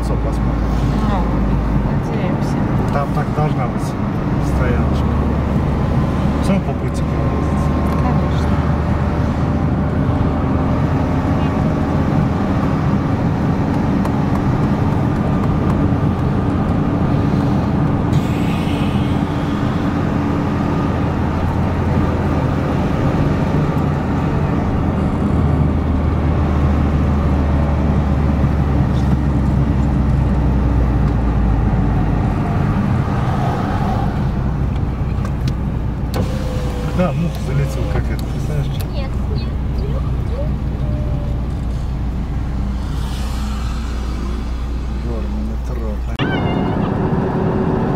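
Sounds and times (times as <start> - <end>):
car engine hum: 0.0 - 47.9
road and tyre noise: 0.0 - 47.9
deep low rumble: 38.1 - 47.9.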